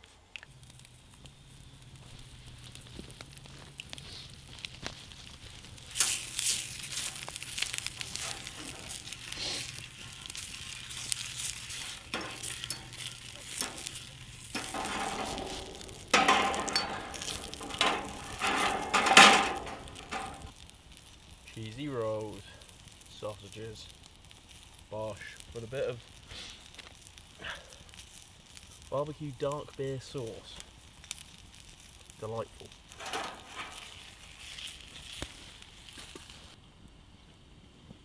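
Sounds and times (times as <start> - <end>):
sausages sizzling in a pan: 0.0 - 36.6.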